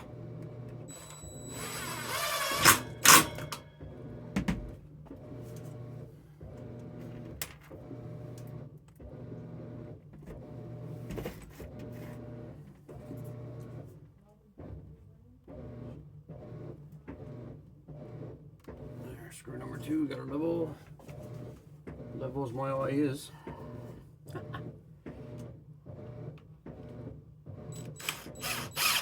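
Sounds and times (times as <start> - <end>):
cordless drill driving a screw: 0.9 - 3.6, 27.7 - 29.0.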